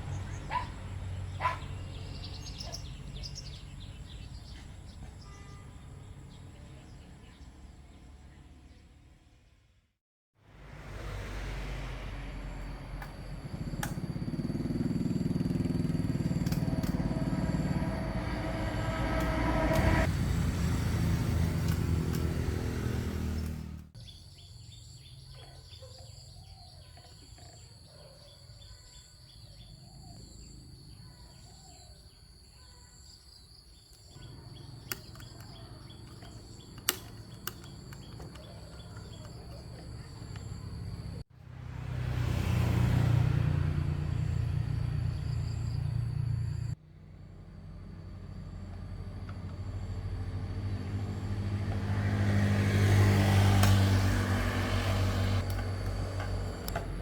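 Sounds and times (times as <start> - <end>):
birds chirping: 0.0 - 9.0, 12.5 - 41.2, 43.9 - 46.8
small engine running: 10.6 - 24.0, 34.2 - 57.0
high insect drone: 11.1 - 22.9
sharp clicks: 16.3 - 17.0, 34.5 - 40.5
low rumble: 16.4 - 22.2.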